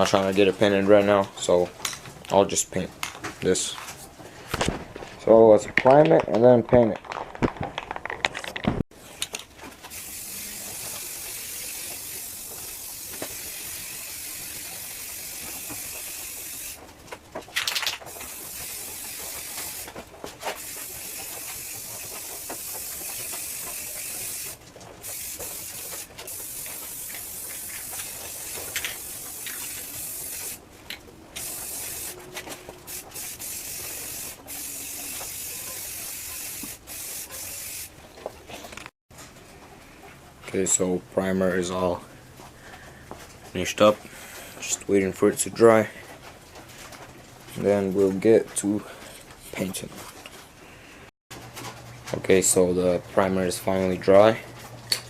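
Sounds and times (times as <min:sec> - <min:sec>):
aerosol spray can hissing: 0:09.9 - 0:16.8, 0:18.1 - 0:19.9, 0:20.6 - 0:30.6, 0:31.4 - 0:32.2, 0:32.8 - 0:37.9.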